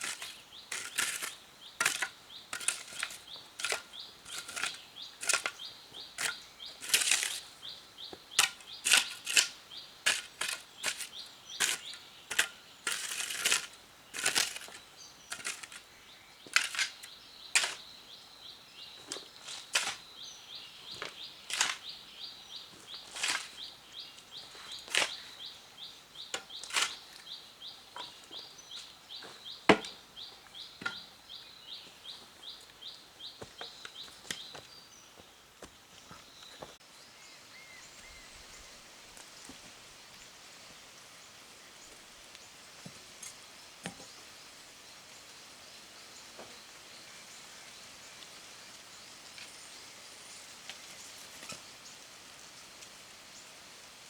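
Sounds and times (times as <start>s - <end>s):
sharp knocks and scrapes: 0.0s - 7.5s, 8.1s - 17.8s, 19.0s - 20.1s, 20.9s - 22.0s, 22.9s - 23.7s, 24.4s - 25.4s, 26.3s - 27.3s, 29.7s - 30.0s, 30.8s - 31.1s.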